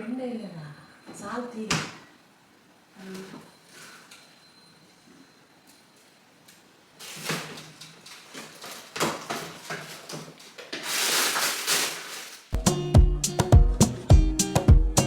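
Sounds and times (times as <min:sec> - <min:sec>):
rustling and knocking of objects: 0:07.0 - 0:12.6.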